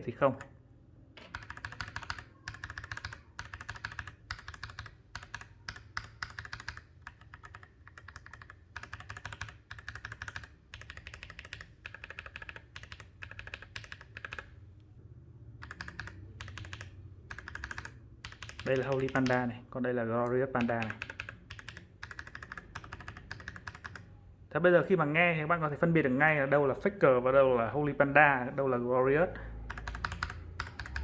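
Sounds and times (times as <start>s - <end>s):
mechanical keyboard typing: 1.2s - 14.6s, 15.6s - 19.5s, 20.5s - 24.1s, 29.6s - 31.0s.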